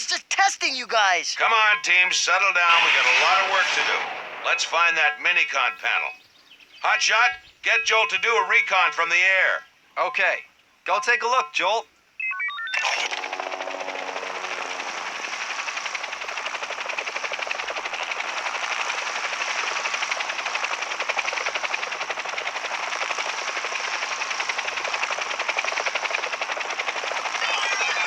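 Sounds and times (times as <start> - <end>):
cartoon helicopter rotor chopping: 1.9 - 6.0, 12.7 - 28.0.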